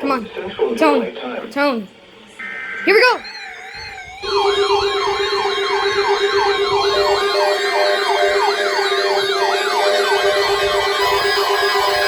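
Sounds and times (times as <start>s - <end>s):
siren-style emergency alert tone: 2.4s - 12.0s.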